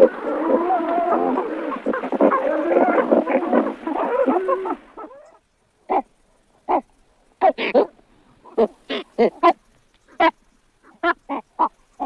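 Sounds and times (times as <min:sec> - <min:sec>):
walruses bellowing: 0:00.0 - 0:05.3.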